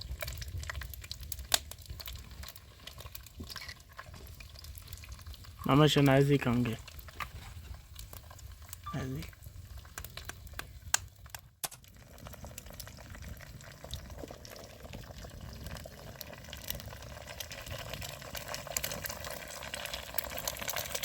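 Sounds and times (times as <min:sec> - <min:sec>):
eggs sizzling in a pan: 0:00.0 - 0:21.0
fire crackling: 0:00.0 - 0:21.0.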